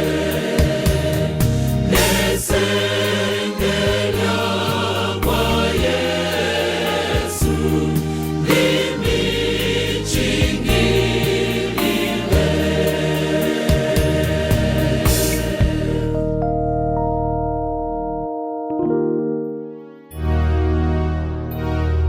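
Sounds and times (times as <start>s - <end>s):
gospel choir singing: 0.0s - 16.4s
keyboard and bass with beat: 0.0s - 22.0s.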